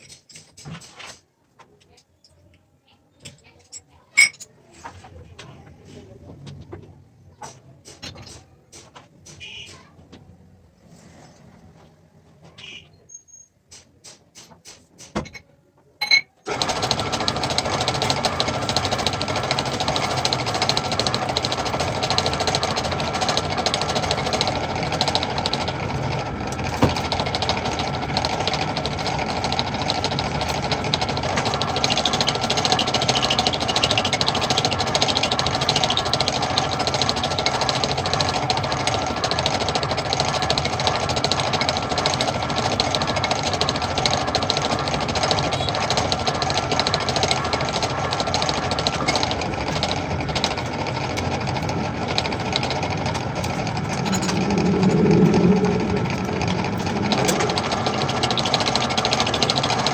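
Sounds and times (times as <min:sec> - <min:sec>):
metal lathe whining and rattling: 0:16.5 - 0:59.9.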